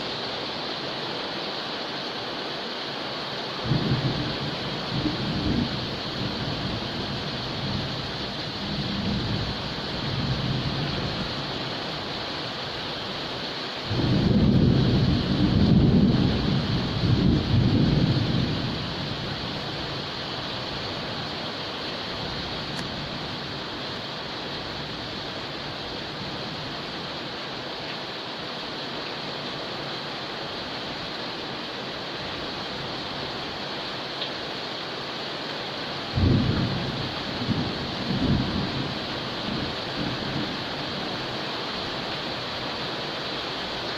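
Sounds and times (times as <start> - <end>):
heavy rain falling: 0.0 - 43.9
thunder rumbling: 3.6 - 11.8, 13.9 - 20.1, 36.2 - 41.2.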